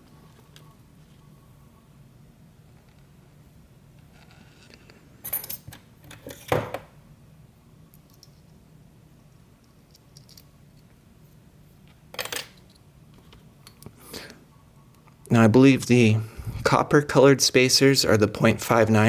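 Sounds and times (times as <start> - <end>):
metal lock parts clinking: 5.2 - 6.6, 9.8 - 10.9, 12.1 - 13.9.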